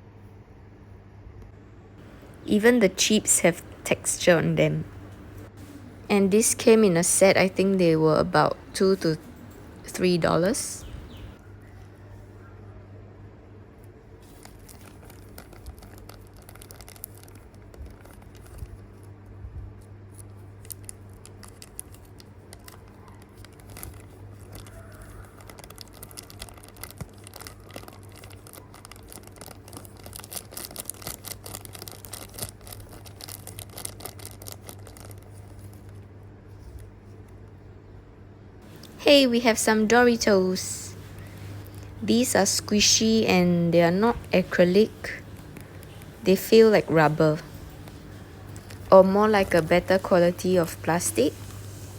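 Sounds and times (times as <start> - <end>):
plastic packaging crinkling: 14.2 - 19.3, 19.9 - 36.1, 40.4 - 51.9.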